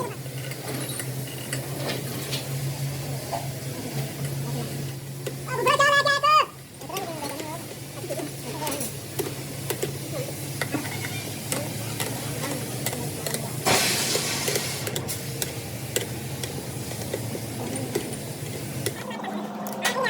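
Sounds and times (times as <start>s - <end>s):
low mechanical hum: 0.0s - 20.0s
short burst of hiss: 13.6s - 15.3s.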